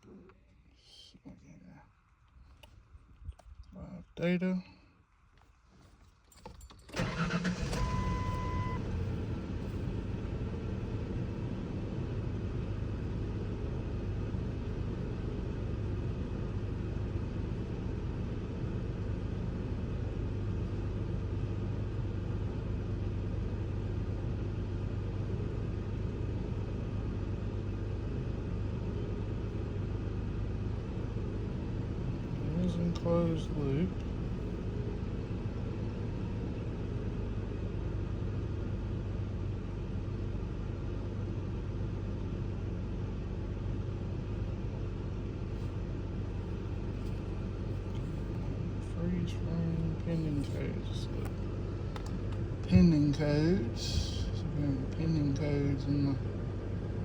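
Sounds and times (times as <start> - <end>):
car engine cranking and idling: 2.0 - 57.0
short electronic beep: 7.8 - 8.8.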